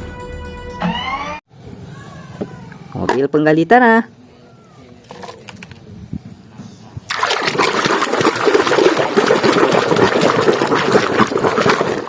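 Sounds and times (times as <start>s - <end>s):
running water splashing: 7.1s - 12.0s.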